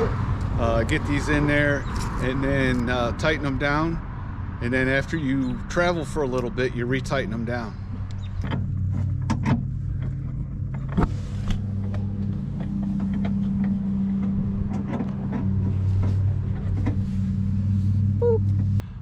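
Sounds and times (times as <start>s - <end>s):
low motor hum: 0.0s - 19.0s
metal clicks and knocks: 7.9s - 11.1s.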